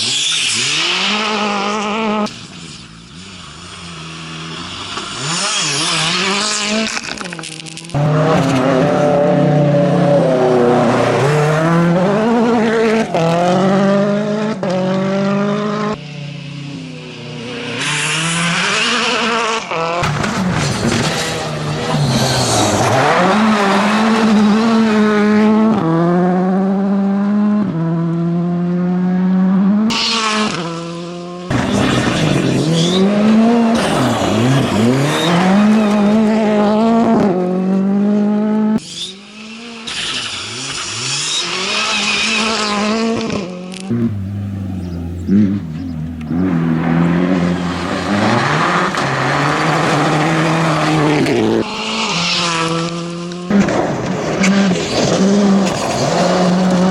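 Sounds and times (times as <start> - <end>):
rally car engines revving: 0.0 - 56.9.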